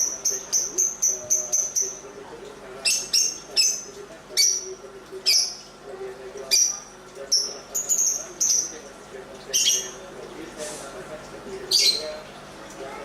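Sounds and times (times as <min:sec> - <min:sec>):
bird chirping: 0:00.0 - 0:02.1, 0:02.8 - 0:05.7, 0:06.5 - 0:08.8, 0:09.5 - 0:10.0, 0:11.7 - 0:12.2.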